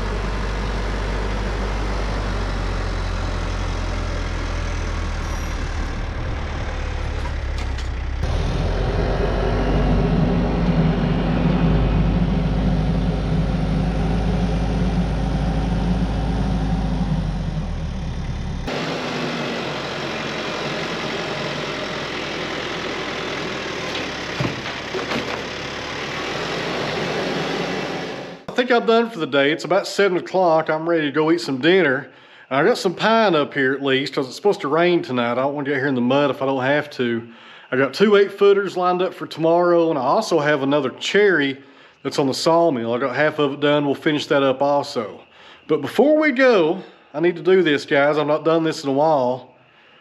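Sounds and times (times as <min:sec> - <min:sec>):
engine deep rumble: 0:00.0 - 0:28.6.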